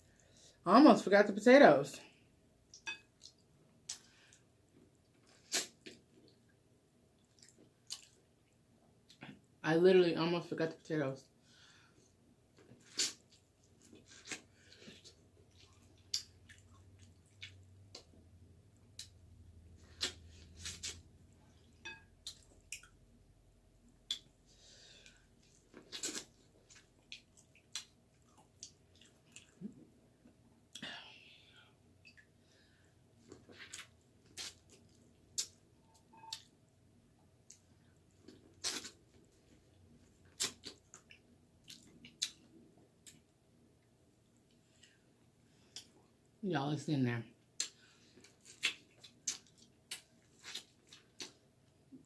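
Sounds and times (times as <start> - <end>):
low steady hum: 0.0 - 52.0
wet squishes and clicks of food: 2.7 - 9.5, 12.5 - 23.2, 23.8 - 30.8, 32.0 - 32.4, 33.2 - 36.6, 37.2 - 45.0, 47.4 - 52.0
person chewing: 7.2 - 8.3, 12.6 - 18.2, 19.8 - 23.0, 24.0 - 30.8, 33.2 - 36.5, 37.4 - 43.2, 47.6 - 51.4.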